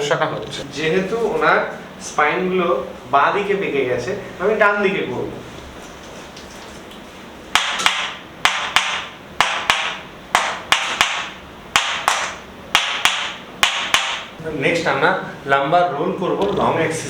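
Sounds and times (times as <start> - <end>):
sharp percussive knocks: 7.5 - 14.4.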